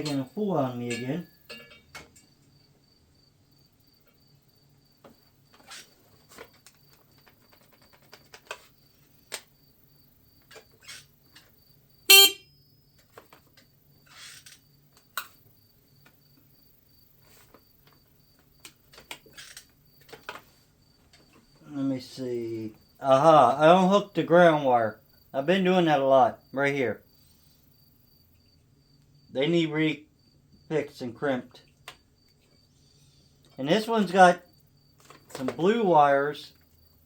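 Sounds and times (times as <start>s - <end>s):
clicks and rattles of wiring work: 0.0s - 2.4s, 5.0s - 9.5s, 17.2s - 21.6s, 35.0s - 35.7s
scooter horn beep: 12.1s - 12.5s.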